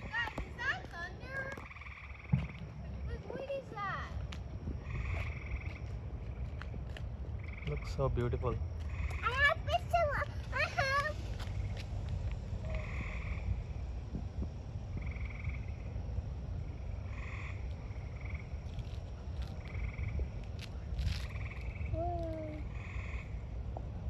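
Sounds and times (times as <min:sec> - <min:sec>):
frogs calling in a chorus: 0:00.0 - 0:02.8, 0:04.6 - 0:10.7, 0:12.6 - 0:13.9, 0:14.9 - 0:23.7
steady low rumble: 0:00.0 - 0:24.0.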